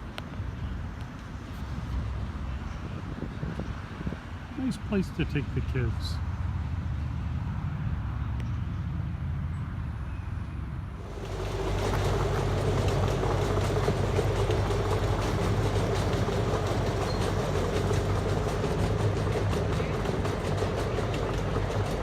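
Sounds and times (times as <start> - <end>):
small train running on track: 0.0 - 8.1, 10.2 - 22.0
fast clicking of train wheels: 11.0 - 22.0.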